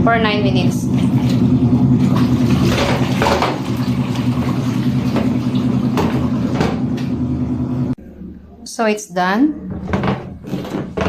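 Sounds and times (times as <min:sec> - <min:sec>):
washing machine motor humming: 0:00.0 - 0:08.3.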